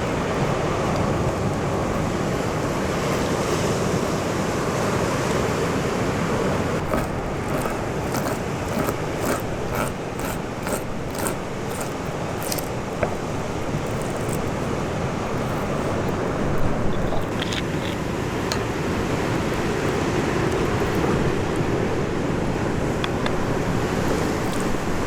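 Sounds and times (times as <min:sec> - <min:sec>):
wind: 0:00.0 - 0:25.0.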